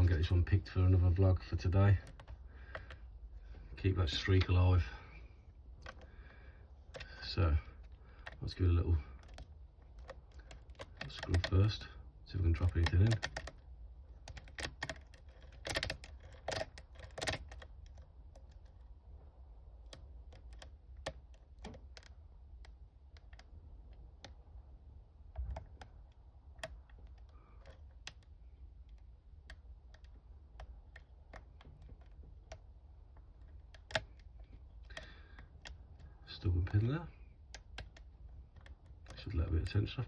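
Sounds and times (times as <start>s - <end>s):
lock pick clicking on pins: 12.6s - 13.6s, 14.2s - 18.7s, 33.2s - 36.1s.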